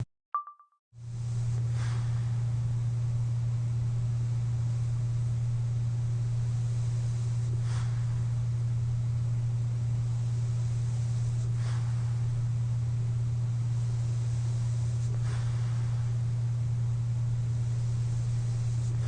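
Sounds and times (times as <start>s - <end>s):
machine blower low hum: 1.0s - 19.0s
soft airy breaths: 1.4s - 2.6s, 6.3s - 8.6s, 9.3s - 19.0s.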